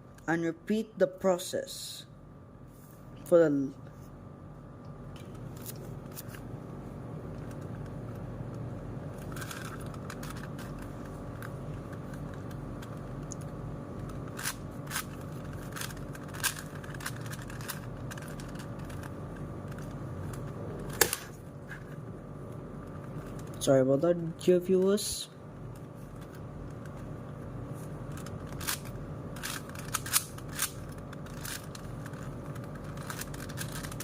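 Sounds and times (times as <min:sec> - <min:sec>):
room hum: 0:00.0 - 0:34.0
puzzle cube clicking: 0:09.2 - 0:21.3, 0:28.1 - 0:34.0.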